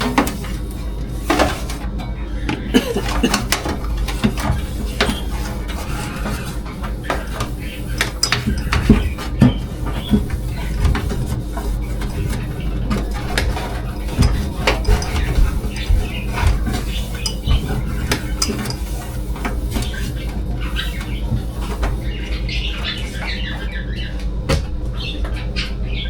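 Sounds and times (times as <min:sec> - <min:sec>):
steady low hum: 0:00.0 - 0:26.0
dishes and utensils clinking: 0:02.5 - 0:03.6, 0:14.1 - 0:18.8.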